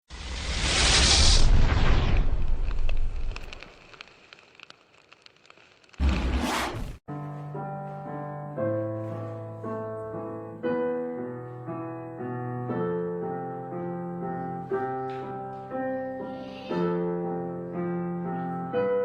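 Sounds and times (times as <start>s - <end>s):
gentle piano music: 7.1s - 19.0s.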